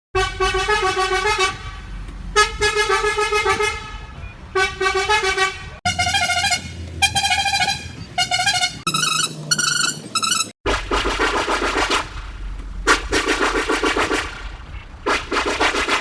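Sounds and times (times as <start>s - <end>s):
bus horn blasts: 0.2s - 1.7s, 2.4s - 4.0s, 4.6s - 10.6s.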